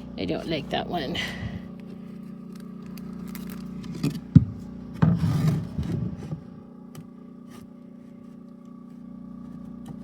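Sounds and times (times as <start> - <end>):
boards rubbing and scraping: 3.8 - 6.6.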